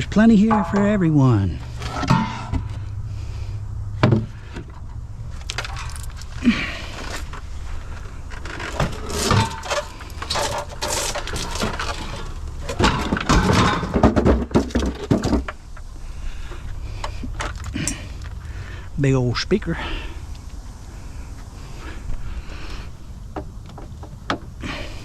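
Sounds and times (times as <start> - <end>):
steady low rumble: 0.0 - 13.3, 15.4 - 25.0
scrap items knocking and clattering: 1.8 - 2.8, 8.5 - 15.6.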